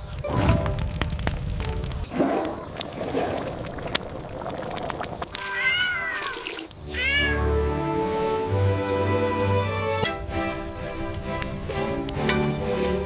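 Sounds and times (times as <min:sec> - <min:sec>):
cat meowing: 0:05.4 - 0:07.5
music: 0:06.8 - 0:13.0.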